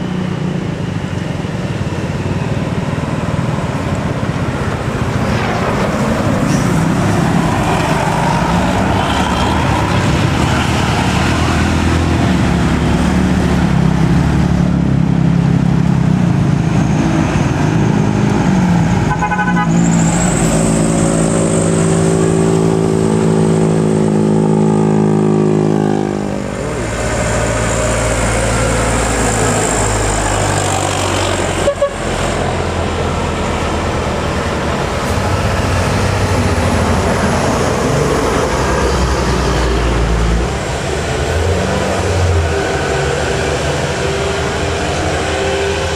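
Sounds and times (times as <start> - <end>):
bus engine and road noise: 0.0 - 45.9
air horn chord: 19.1 - 19.7.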